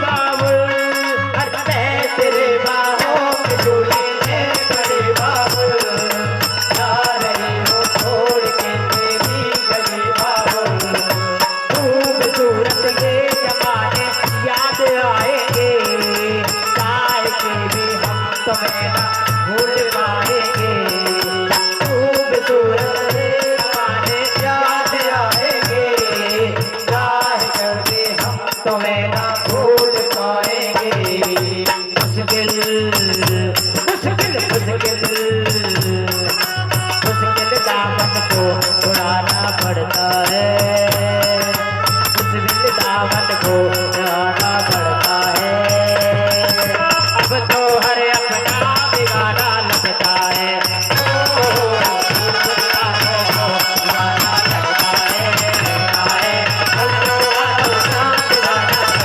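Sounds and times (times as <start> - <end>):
rattling percussion beat: 0.0 - 59.0.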